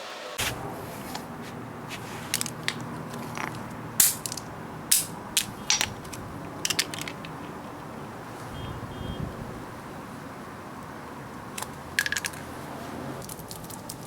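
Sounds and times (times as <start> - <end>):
steady low hiss: 0.0 - 14.0
hand tools clicking and knocking: 1.9 - 7.8, 11.6 - 12.5, 13.2 - 14.0.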